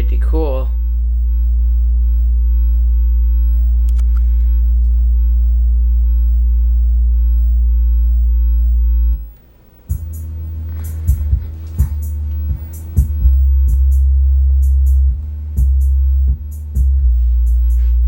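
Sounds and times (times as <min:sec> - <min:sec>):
low sine-wave test tone: 0:00.0 - 0:18.0
music with drum beat: 0:09.9 - 0:18.0.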